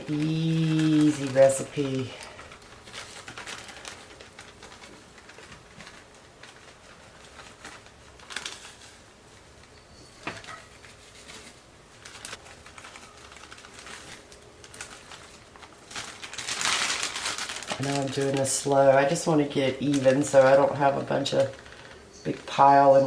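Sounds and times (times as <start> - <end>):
cake mix pattering: 0.0 - 23.0.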